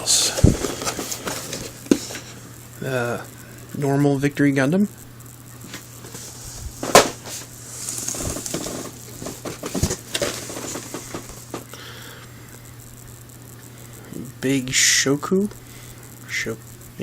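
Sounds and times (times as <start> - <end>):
cardboard boxes rustling: 0.0 - 2.5, 5.7 - 11.7.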